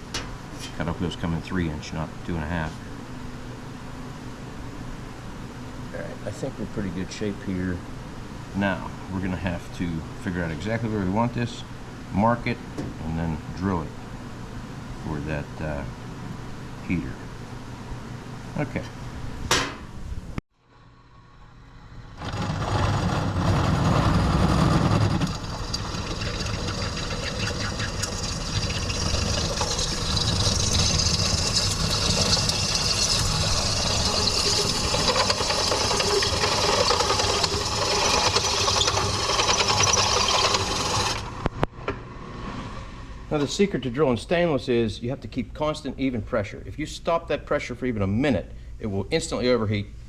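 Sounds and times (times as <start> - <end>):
electric drill boring into metal: 22.2 - 41.3.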